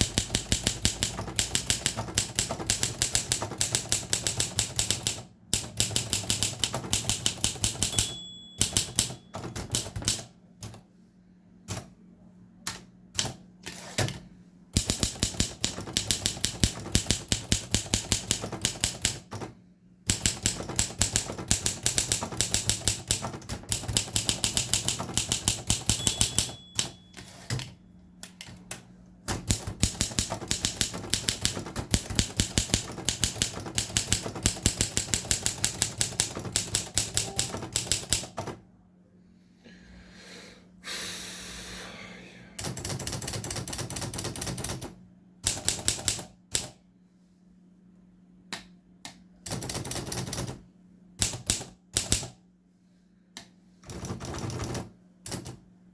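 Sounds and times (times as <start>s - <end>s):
typewriter keystroke clacks: 0.0s - 10.8s, 14.8s - 19.5s, 20.1s - 38.6s, 42.6s - 46.8s, 49.4s - 50.6s, 51.2s - 52.4s, 53.8s - 55.6s.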